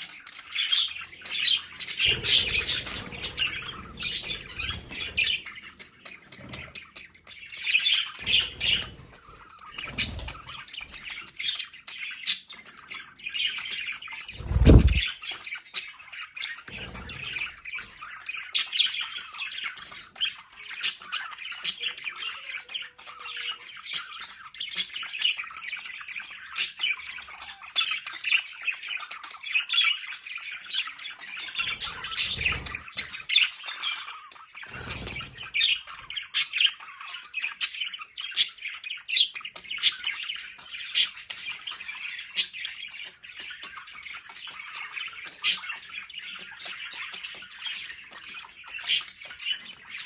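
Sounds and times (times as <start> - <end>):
budgerigars chattering and squawking: 0.0 - 50.0
low thumps: 14.4 - 15.0.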